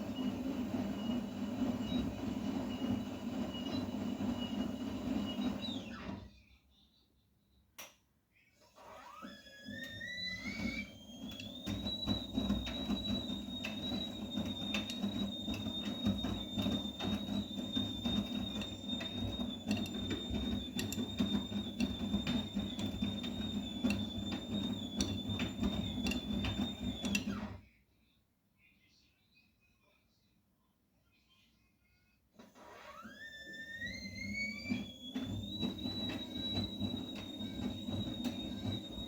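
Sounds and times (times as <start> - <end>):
washing machine motor whine: 0.0 - 6.4, 8.6 - 27.6, 32.4 - 39.0
drum rattling: 11.4 - 27.3.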